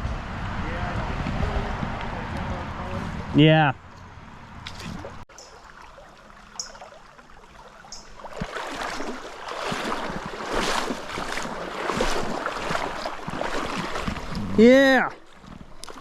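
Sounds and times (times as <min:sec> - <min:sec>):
river water splashing around wader: 0:04.6 - 0:16.0.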